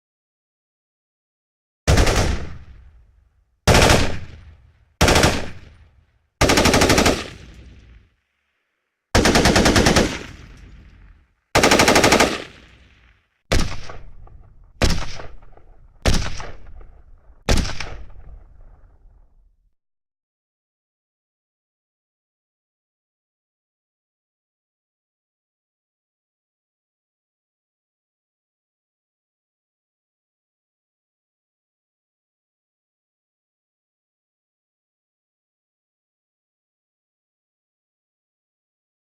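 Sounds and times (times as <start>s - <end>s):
rifle gunfire bursts: 1.9s - 2.7s, 3.7s - 4.4s, 5.0s - 5.8s, 6.4s - 7.8s, 9.2s - 10.9s, 11.6s - 12.9s, 13.5s - 14.1s, 14.8s - 16.9s.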